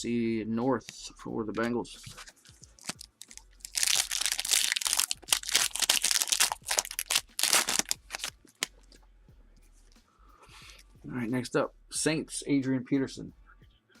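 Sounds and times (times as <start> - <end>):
wrapper tearing and crinkling: 2.0 - 8.7.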